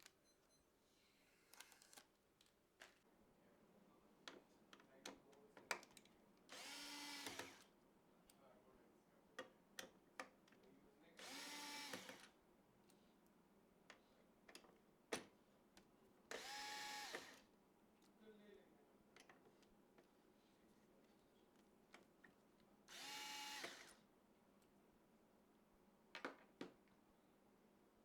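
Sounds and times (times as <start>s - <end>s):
electric screwdriver whirring: 6.5s - 7.7s, 11.2s - 12.3s, 16.3s - 17.4s, 22.9s - 24.0s.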